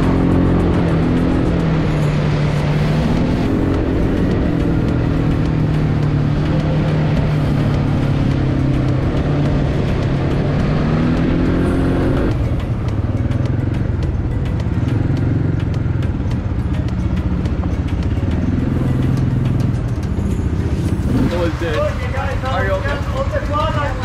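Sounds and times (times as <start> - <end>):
quad bike engine revving: 0.0 - 12.4, 20.9 - 22.0
quad bike engines running: 0.0 - 24.0.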